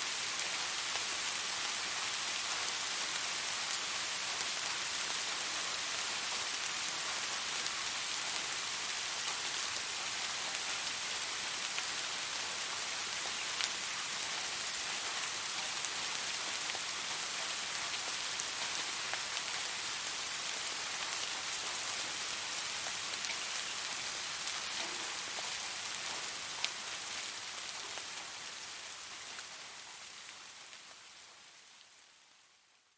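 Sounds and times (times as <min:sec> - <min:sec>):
steady rain falling: 0:00.0 - 0:32.9.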